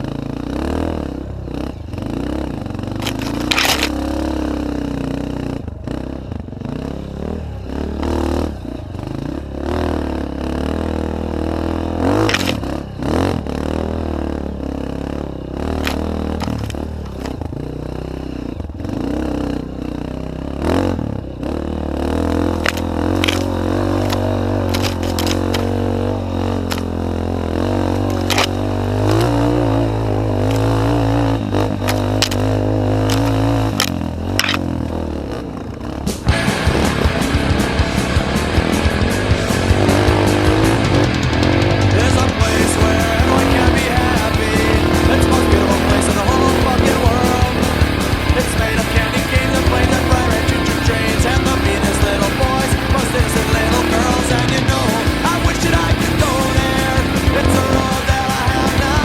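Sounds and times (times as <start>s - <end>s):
motorcycle engine revving: 0.0s - 59.0s
bike clattering over rough ground: 2.9s - 4.1s, 12.0s - 13.0s, 15.8s - 17.6s, 22.5s - 27.0s, 27.8s - 29.6s.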